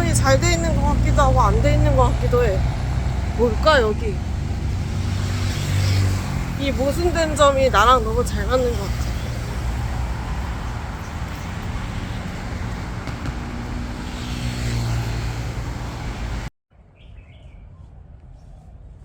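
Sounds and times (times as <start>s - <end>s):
street traffic noise: 0.0s - 16.5s
vehicle engine passing by: 0.0s - 16.5s
faint bird chirps: 16.9s - 18.6s.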